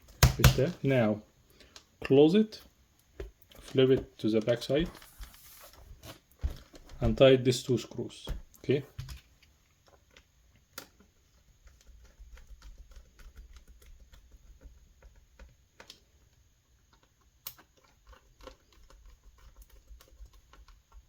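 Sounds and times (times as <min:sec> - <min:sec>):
laptop being handled: 0:00.0 - 0:00.8, 0:03.2 - 0:07.5.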